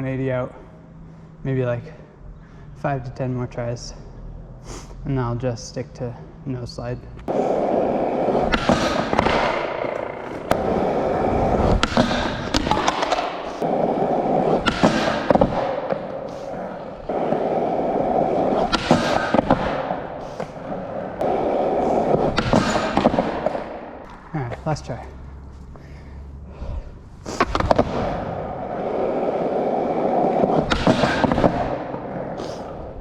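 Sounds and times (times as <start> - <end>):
skateboard clacking and thudding: 7.3 - 24.2, 27.4 - 33.0
skateboard wheels rolling: 7.3 - 24.3, 27.2 - 33.0.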